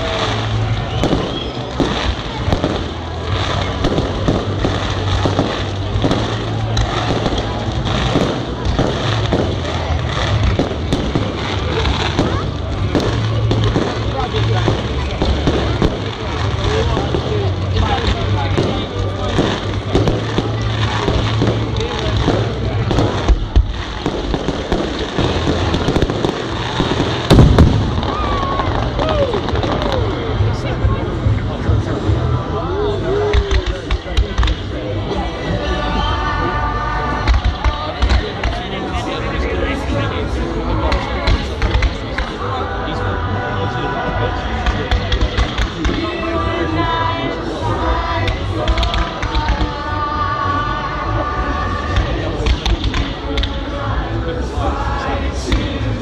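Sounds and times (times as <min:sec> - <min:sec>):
fireworks bangs: 0:00.0 - 0:32.1, 0:33.2 - 0:42.6, 0:43.3 - 0:56.0
fireworks crackle: 0:00.0 - 0:56.0
loud firework bang: 0:19.4 - 0:30.0.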